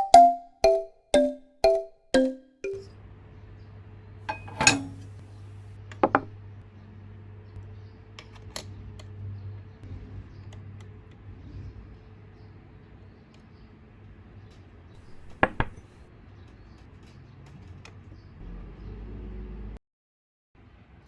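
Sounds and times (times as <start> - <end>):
chime note: 0.0 - 2.9
toy dishes clinking: 0.0 - 2.9, 4.3 - 5.2, 15.0 - 16.0.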